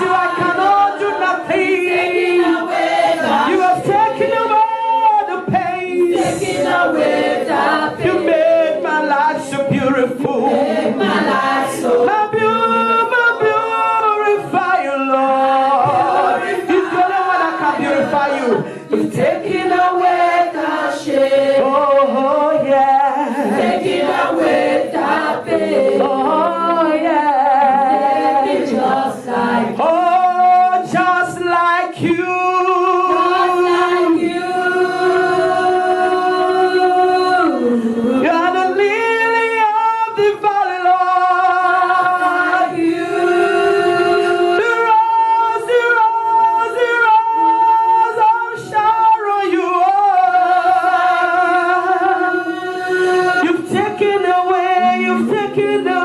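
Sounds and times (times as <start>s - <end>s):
choir singing gospel song: 0.0s - 56.0s.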